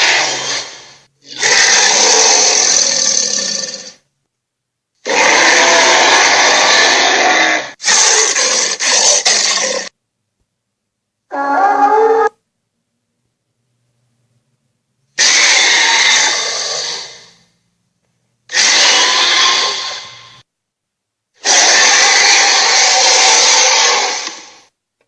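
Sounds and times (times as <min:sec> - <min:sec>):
dinosaur roar: 0:00.0 - 0:04.0, 0:05.0 - 0:09.9, 0:11.3 - 0:12.4, 0:15.2 - 0:17.4, 0:18.5 - 0:20.4, 0:21.4 - 0:24.7.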